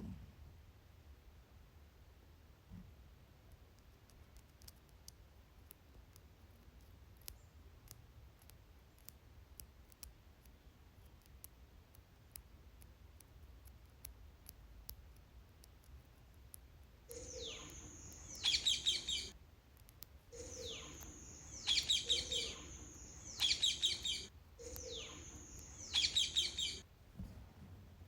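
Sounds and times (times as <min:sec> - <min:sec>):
faint sharp clicks: 0:03.5 - 0:26.8
low steady hum: 0:14.2 - 0:28.0.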